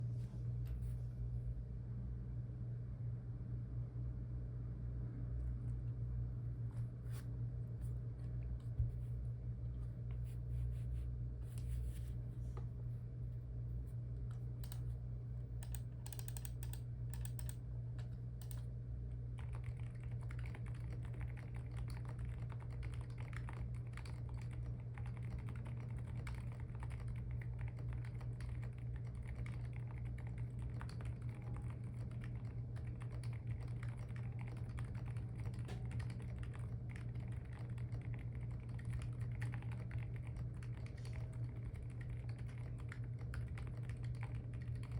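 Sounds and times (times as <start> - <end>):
low hum: 0.0 - 44.9
soft muted keystrokes: 14.3 - 14.9, 15.6 - 18.7.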